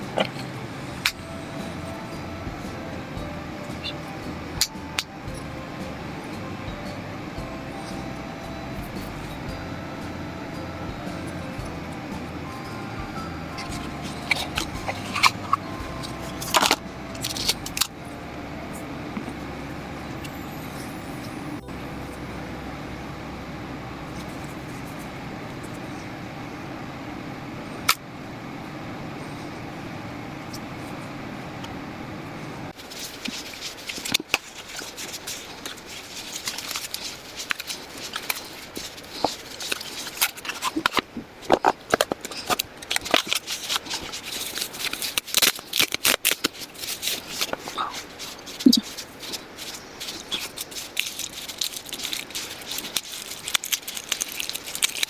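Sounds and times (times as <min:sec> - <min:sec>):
steady low hum: 0:00.0 - 0:54.8
plastic parts clicking and rustling: 0:13.6 - 0:18.2, 0:32.8 - 0:55.0.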